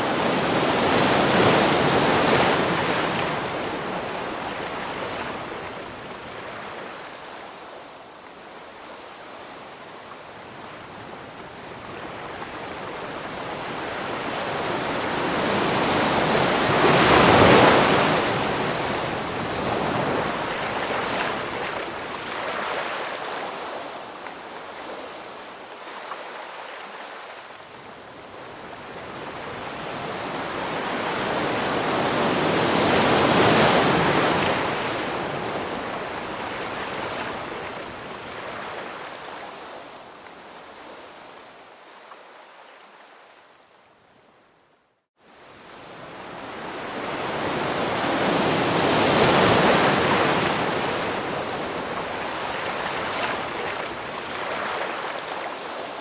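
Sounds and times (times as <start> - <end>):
ocean waves breaking: 13.4 - 23.9.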